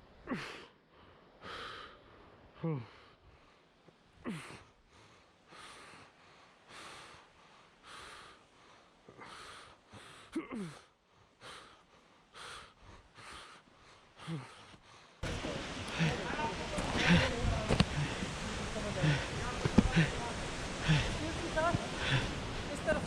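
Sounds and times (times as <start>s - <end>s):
person breathing hard: 0.2s - 22.8s
short grunts: 10.3s - 10.9s.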